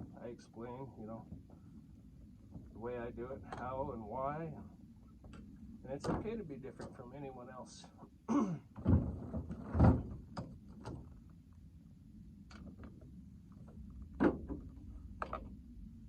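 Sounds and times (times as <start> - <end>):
knocks and thuds: 8.8 - 10.5.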